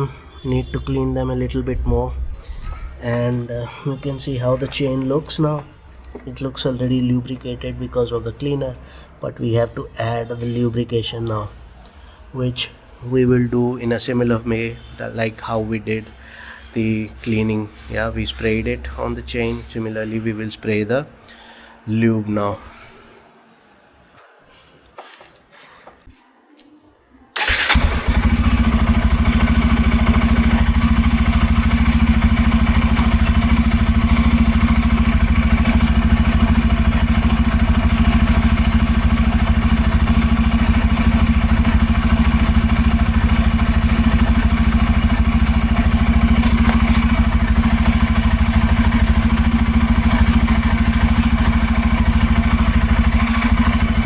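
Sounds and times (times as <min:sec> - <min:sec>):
motorcycle engine starting and running: 0:27.4 - 0:54.0.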